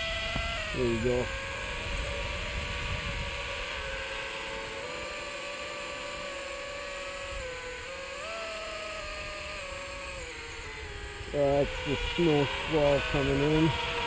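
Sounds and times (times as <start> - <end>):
wind rumble on microphone: 0.0 - 5.2
drone motors whining: 0.0 - 14.0.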